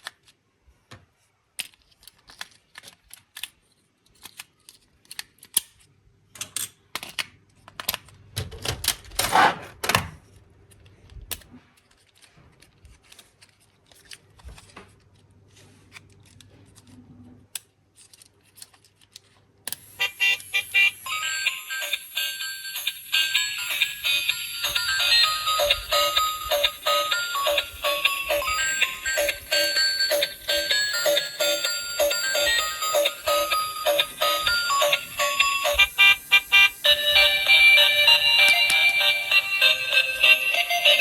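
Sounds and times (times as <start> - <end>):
plastic toy parts clicking: 0.0 - 0.4, 1.5 - 9.2, 10.7 - 15.2, 15.9 - 20.8
bright electronic tune: 20.0 - 41.0.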